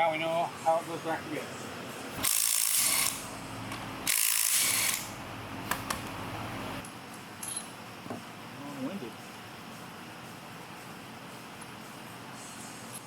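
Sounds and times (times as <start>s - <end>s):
pneumatic air ratchet: 2.2s - 3.3s, 4.0s - 5.2s.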